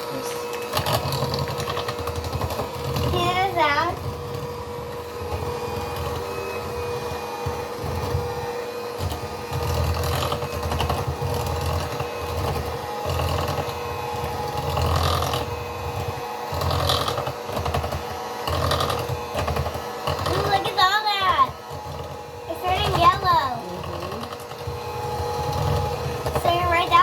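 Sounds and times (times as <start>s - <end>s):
beaters churning batter: 0.0s - 27.0s
electric mixer whining: 0.0s - 27.0s.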